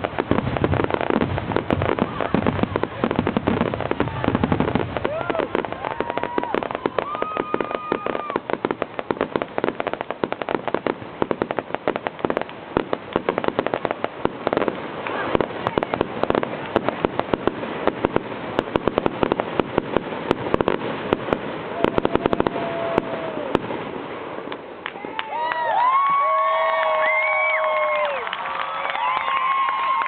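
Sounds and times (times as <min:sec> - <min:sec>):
fireworks crackling: 0:00.0 - 0:30.0
firework whistle: 0:04.8 - 0:09.3, 0:21.6 - 0:23.8.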